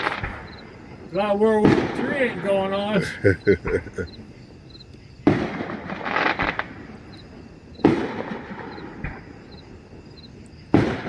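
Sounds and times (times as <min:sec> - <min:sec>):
distant firework bangs: 0:00.0 - 0:03.0, 0:05.2 - 0:10.1, 0:10.7 - 0:11.0
firework crackling: 0:00.0 - 0:03.2, 0:05.3 - 0:09.3.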